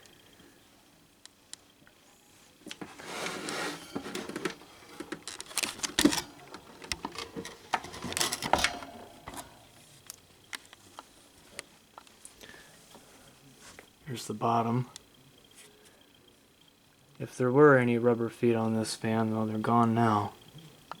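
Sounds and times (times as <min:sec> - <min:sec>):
plastic fan scraping and rustling: 0:02.7 - 0:10.1.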